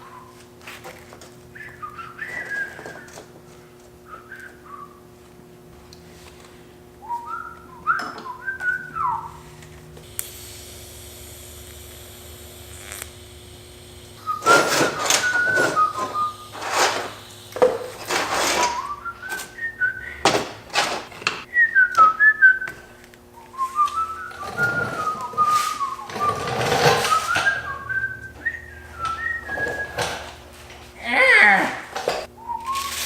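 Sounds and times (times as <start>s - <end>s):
faint steady hum: 0.0s - 33.0s
person whistling a tune: 1.5s - 3.3s, 4.0s - 5.0s, 7.0s - 9.5s, 14.2s - 16.6s, 18.5s - 20.3s, 21.5s - 22.8s, 23.4s - 30.2s, 32.4s - 33.0s
short loud hissing bursts: 10.0s - 15.2s.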